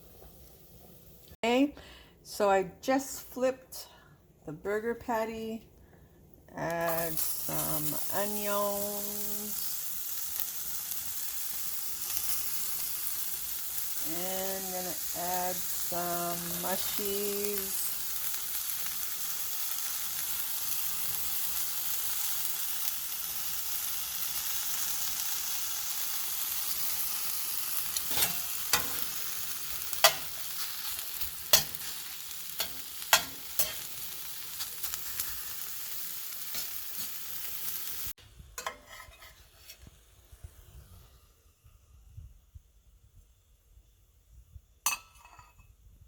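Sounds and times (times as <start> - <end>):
vegetables sizzling in a frying pan: 0.0 - 1.4, 6.6 - 41.5.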